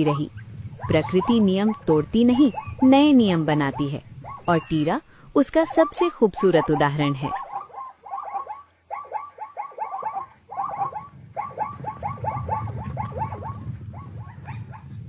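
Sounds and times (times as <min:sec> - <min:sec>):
low rumble: 0:00.0 - 0:04.7
zebra barking yelps: 0:00.0 - 0:15.0.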